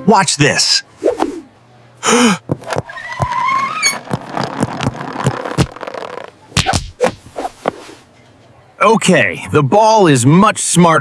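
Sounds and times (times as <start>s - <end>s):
clatter of knocks and thumps: 2.5s - 6.3s.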